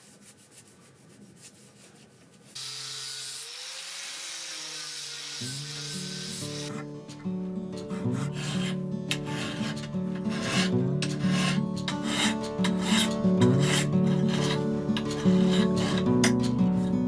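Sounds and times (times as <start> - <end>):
acoustic guitar music: 5.9 - 17.0
file rasping on knife: 7.8 - 16.5.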